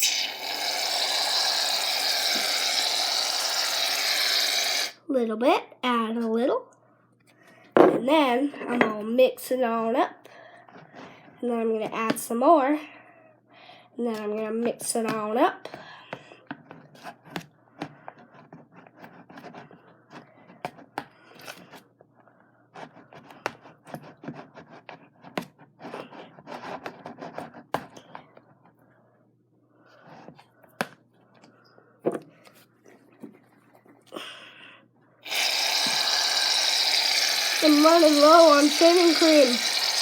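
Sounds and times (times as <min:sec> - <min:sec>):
aerosol can spraying: 0:00.0 - 0:05.0, 0:35.3 - 0:40.0
utensil scraping bowl: 0:00.0 - 0:05.0, 0:35.2 - 0:40.0.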